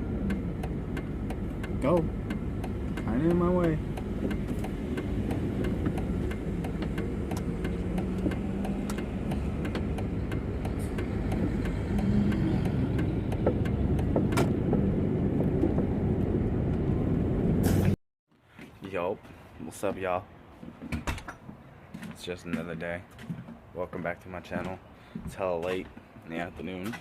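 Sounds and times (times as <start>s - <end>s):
car engine rumbling: 0.0s - 18.0s.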